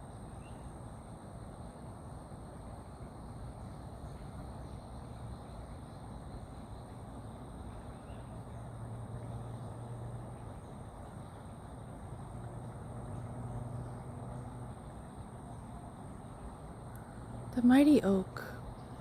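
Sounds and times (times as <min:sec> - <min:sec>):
faint bird chirp: 0:00.1 - 0:00.8, 0:07.7 - 0:11.4.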